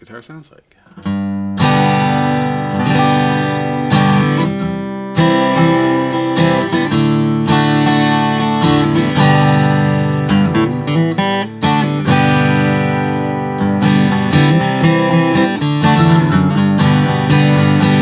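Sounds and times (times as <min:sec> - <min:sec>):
acoustic guitar strummed: 0:01.0 - 0:18.0.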